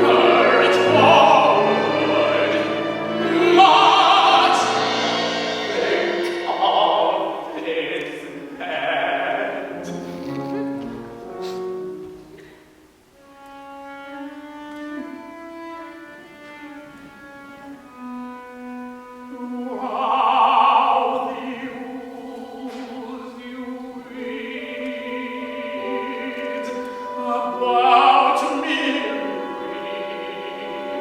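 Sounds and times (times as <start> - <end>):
bowed strings holding long notes: 0.0 - 12.5.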